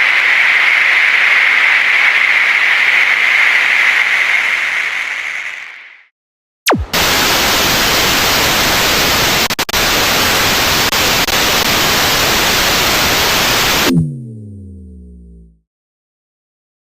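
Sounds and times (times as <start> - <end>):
white-noise static: 6.7 - 13.9
low humming tone sliding down: 13.9 - 15.6.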